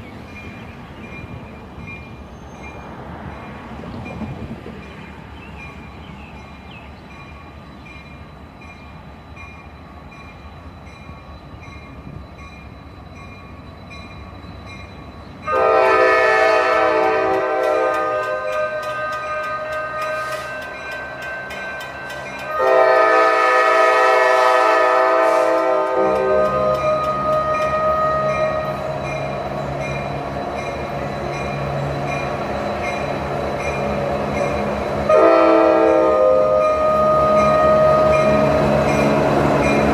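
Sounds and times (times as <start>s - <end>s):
train rumbling: 0.0s - 39.9s
locomotive air horn chord: 15.5s - 20.7s, 22.5s - 29.0s, 35.1s - 39.6s.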